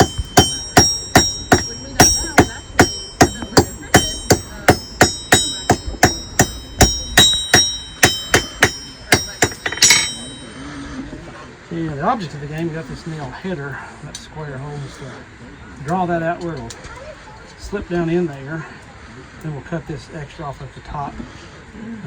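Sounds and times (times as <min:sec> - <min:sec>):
hammer striking iron on anvil: 0:00.0 - 0:10.8.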